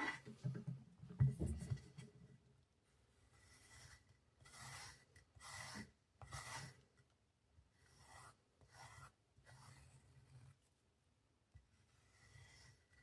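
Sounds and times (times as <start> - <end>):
faint rubbing strokes: 3.1 - 6.8.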